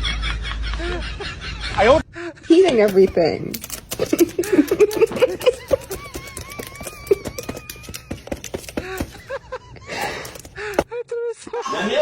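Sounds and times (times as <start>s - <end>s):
parrot clicking and chirping: 2.9s - 10.8s.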